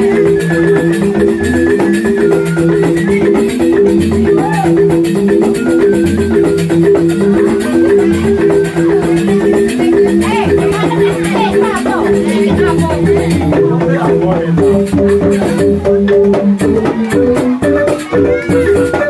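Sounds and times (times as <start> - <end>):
bamboo xylophone ensemble: 0.0 - 19.0
high held melody line: 0.0 - 19.0
deep bass notes: 10.2 - 17.4.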